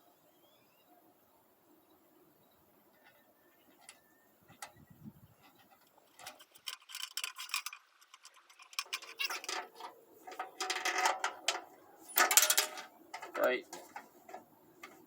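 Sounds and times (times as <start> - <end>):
small metal hardware clicking: 5.5 - 15.0.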